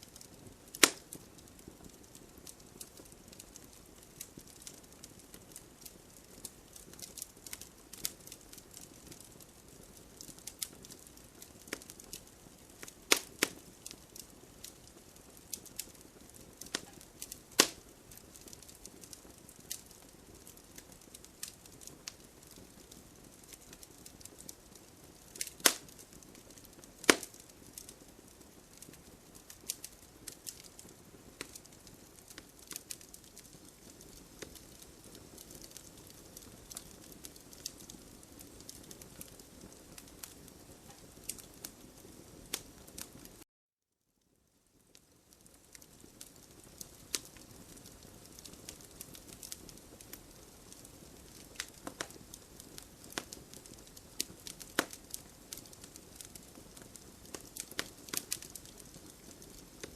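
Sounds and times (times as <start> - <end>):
fire crackling: 0.0 - 43.4, 44.5 - 59.9
wood fire hissing: 0.0 - 43.4, 44.8 - 59.9
wood snapping pops: 0.8 - 1.0, 27.1 - 27.4.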